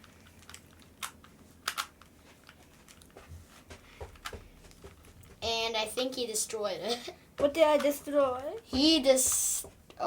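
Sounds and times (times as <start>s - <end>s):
puzzle cube layers clicking: 0.0s - 2.1s.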